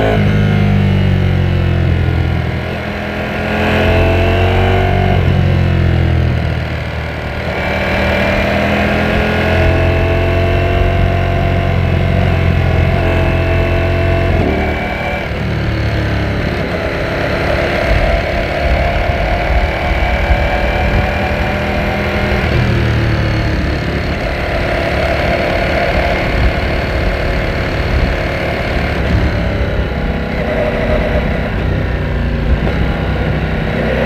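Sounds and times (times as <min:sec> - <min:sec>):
motorcycle engine changing gears: 0:00.0 - 0:34.0.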